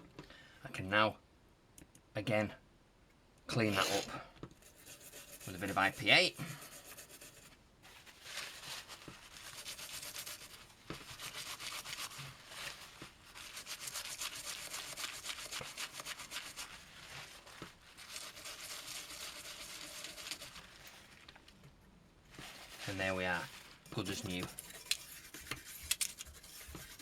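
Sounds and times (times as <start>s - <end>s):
brush scrubbing circuit board: 3.6s - 7.6s, 8.2s - 21.2s, 22.4s - 27.0s.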